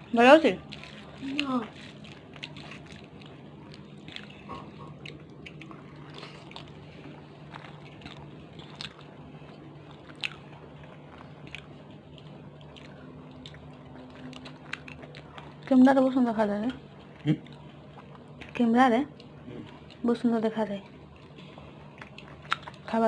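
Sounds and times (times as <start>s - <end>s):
low steady hum: 0.0s - 23.0s
soft chewing with wet mouth clicks: 0.6s - 20.1s, 20.8s - 23.0s.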